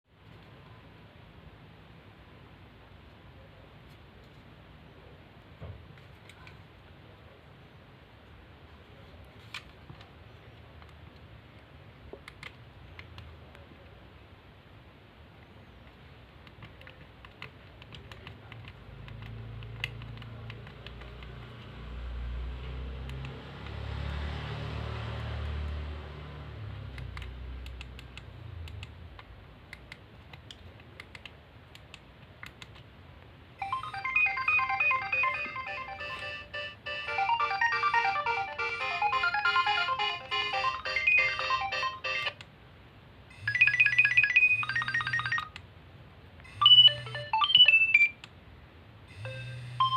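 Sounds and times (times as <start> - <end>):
polyphonic phone ringtone: 33.6 - 42.4, 43.4 - 45.6, 46.6 - 48.2, 49.2 - 49.9.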